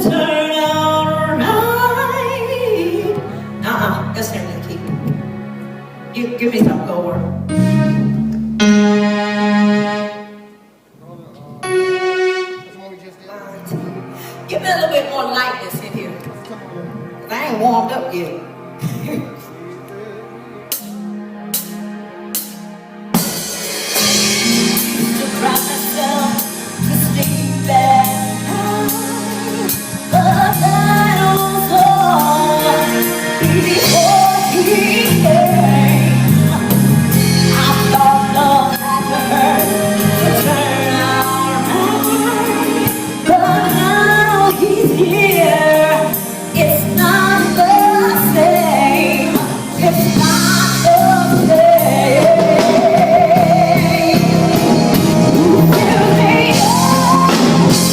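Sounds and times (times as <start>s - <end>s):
live band playing gospel music: 0.0s - 57.9s
person singing: 24.0s - 57.9s.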